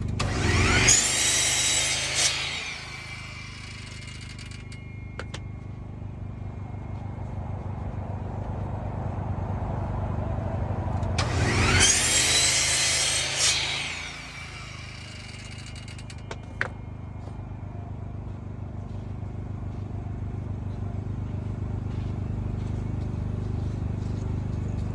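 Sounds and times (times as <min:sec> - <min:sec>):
power saw cutting plywood: 0:00.0 - 0:05.4, 0:11.2 - 0:16.8
steady low hum: 0:02.3 - 0:11.2, 0:13.9 - 0:24.9.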